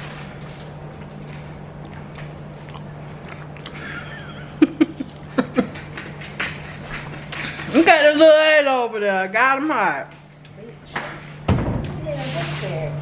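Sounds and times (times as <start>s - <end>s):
steady low hum: 0.0s - 13.0s
person chewing crunchy food: 0.5s - 3.8s, 4.9s - 7.7s.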